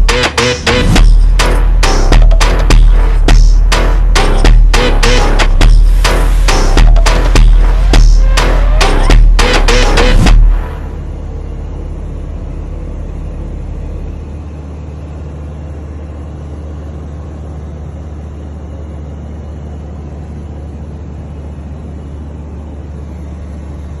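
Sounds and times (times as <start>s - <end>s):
light aircraft engine and propeller: 10.6s - 24.0s.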